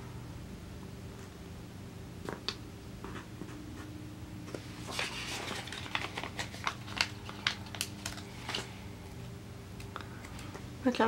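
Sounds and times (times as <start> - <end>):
crinkly paper rustling: 4.4 - 9.3.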